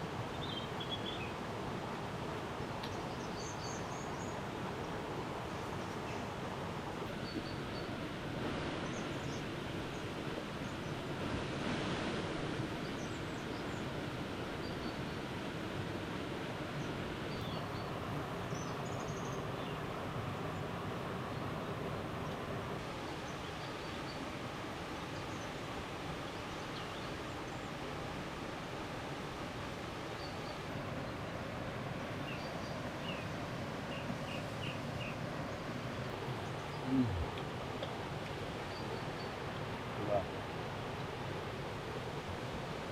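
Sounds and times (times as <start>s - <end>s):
forest background noise: 0.0s - 42.9s
faint bird chirps: 36.4s - 37.4s.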